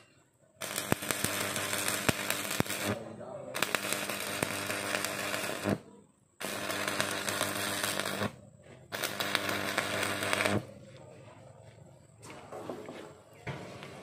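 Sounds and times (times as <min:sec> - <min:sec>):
arc welding buzzing and crackling: 0:00.6 - 0:05.8, 0:06.4 - 0:10.7.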